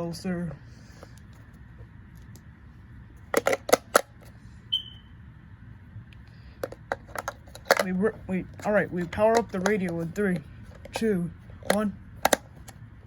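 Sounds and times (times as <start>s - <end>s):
short high beep: 4.7s - 5.1s
sharp plastic clicks and snaps: 9.3s - 12.8s.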